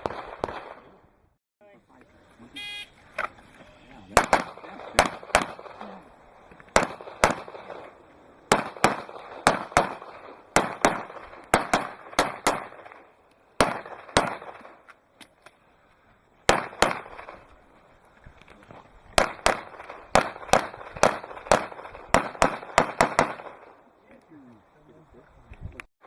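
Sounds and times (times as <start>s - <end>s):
pistol shots with echo: 0.0s - 1.0s, 4.1s - 14.9s, 16.4s - 17.5s, 19.2s - 23.8s.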